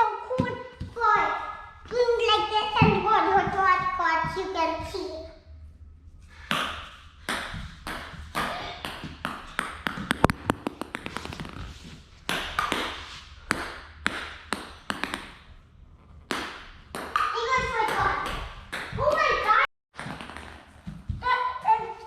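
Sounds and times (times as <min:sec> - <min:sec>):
small ball bounces: 0:06.5 - 0:11.6, 0:12.3 - 0:15.4, 0:16.3 - 0:21.3.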